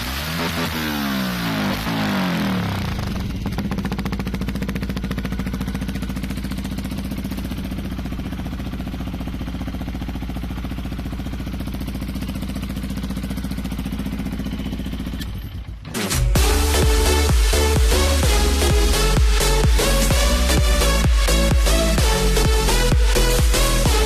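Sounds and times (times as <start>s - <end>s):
motorcycle engine idling: 0.0s - 24.0s.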